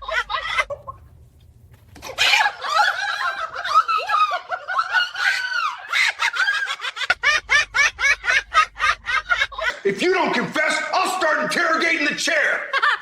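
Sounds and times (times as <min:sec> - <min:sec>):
fast cackling laugh: 0:00.0 - 0:01.1, 0:02.0 - 0:10.3, 0:12.7 - 0:13.0.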